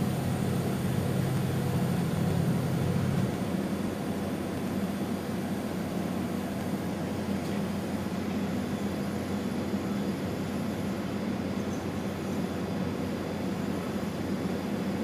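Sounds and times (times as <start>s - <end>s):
milling machine hum: 0.0s - 6.3s.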